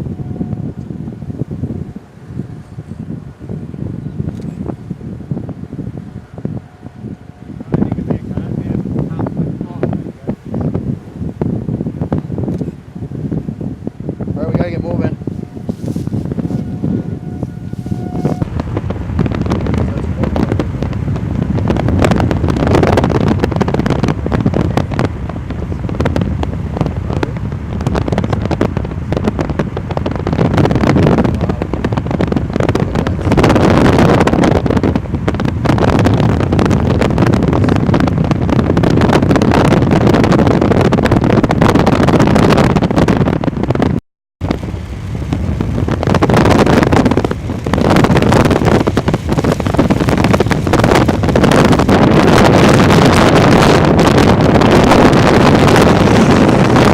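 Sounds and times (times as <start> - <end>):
storm wind buffeting microphone: 0.0 - 56.9.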